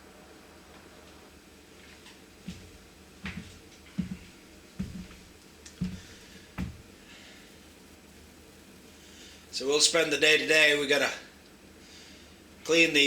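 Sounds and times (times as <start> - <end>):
dull thumps with clicks: 2.5 - 6.9.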